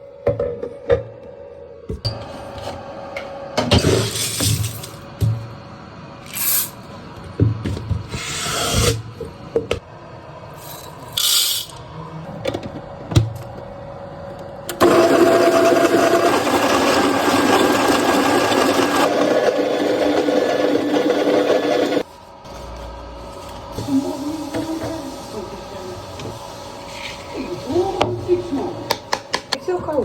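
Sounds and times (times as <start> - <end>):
coffee grinder motor whining: 14.7 - 22.1.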